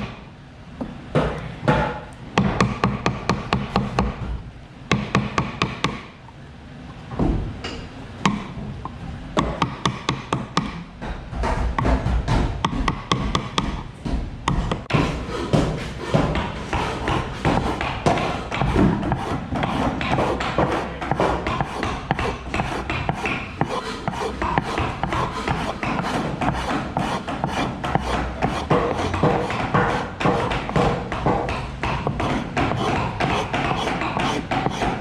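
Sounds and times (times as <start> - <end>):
hand tools rasping wood: 14.5 - 35.0.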